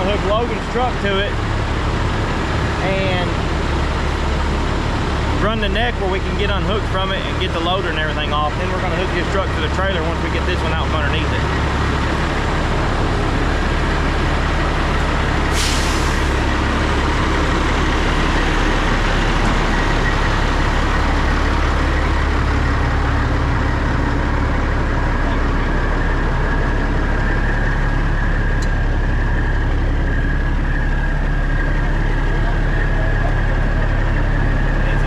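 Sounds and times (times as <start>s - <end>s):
diesel truck idling: 0.0s - 35.0s
compressed air hiss: 15.5s - 16.3s.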